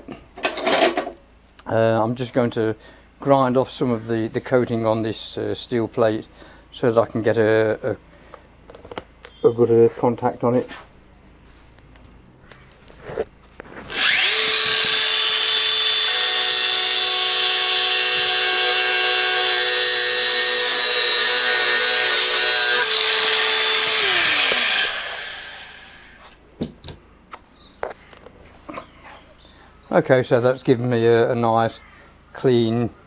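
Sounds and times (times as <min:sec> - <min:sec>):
power grinder grinding steel: 0:13.9 - 0:26.3.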